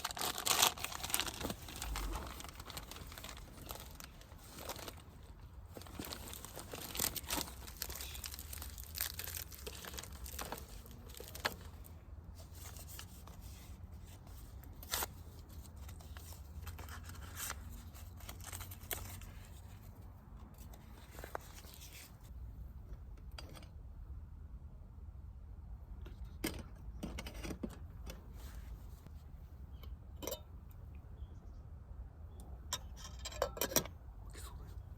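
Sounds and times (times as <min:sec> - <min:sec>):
crinkly material crumpled and torn: 0:00.0 - 0:20.0.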